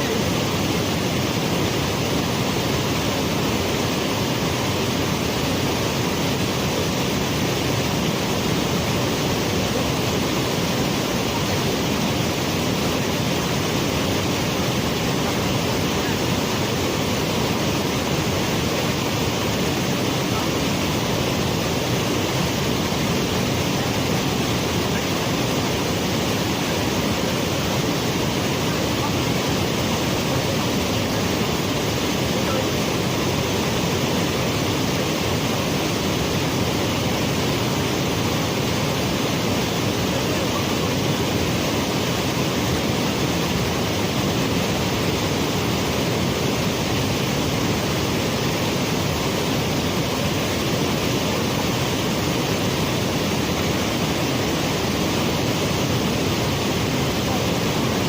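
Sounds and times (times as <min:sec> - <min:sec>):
waterfall rushing over rocks: 0:00.0 - 0:58.0.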